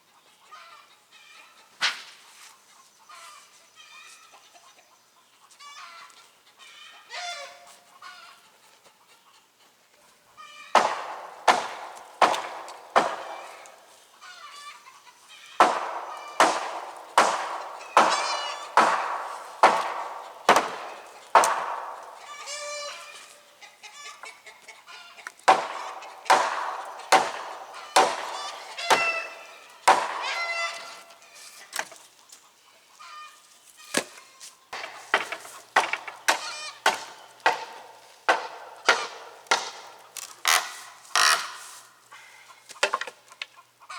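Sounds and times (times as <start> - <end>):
hammer striking wooden boards: 10.8 - 13.8, 15.6 - 22.6, 25.5 - 31.0, 34.8 - 41.6.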